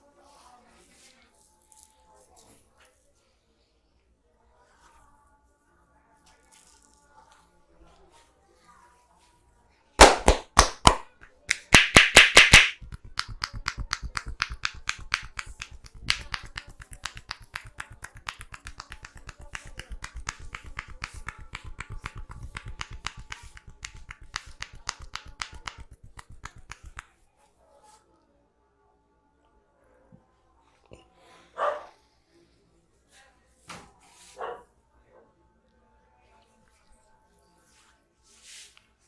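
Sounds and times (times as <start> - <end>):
hands striking head: 10.0 - 27.1.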